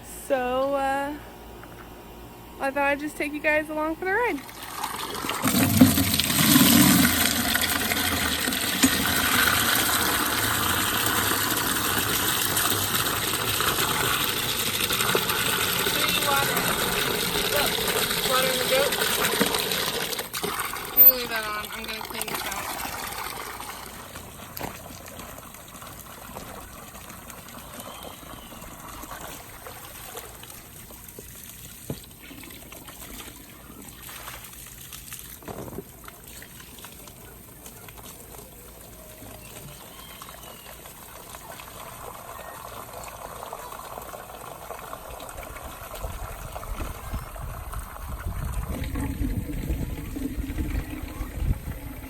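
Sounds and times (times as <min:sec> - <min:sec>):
hose water trickling and splashing: 0:04.1 - 0:52.0
low rumble: 0:46.3 - 0:52.0.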